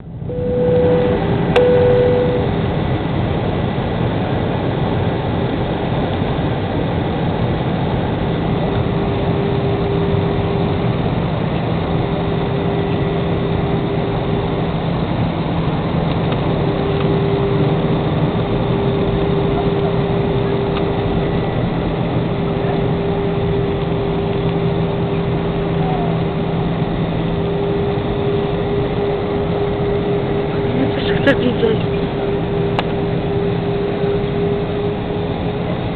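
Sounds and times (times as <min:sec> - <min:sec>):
airplane cabin engine noise: 0:00.0 - 0:35.9
short beeps: 0:00.3 - 0:02.5.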